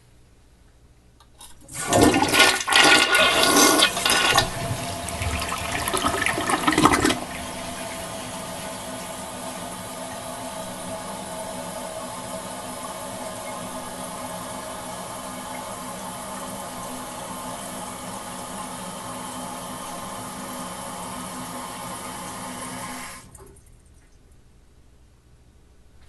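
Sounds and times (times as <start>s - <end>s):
urinating into toilet water: 1.4s - 18.2s.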